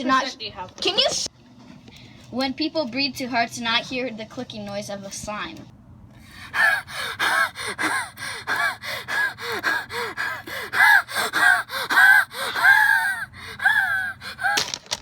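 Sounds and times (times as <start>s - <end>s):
girl breathing heavily: 6.2s - 14.8s.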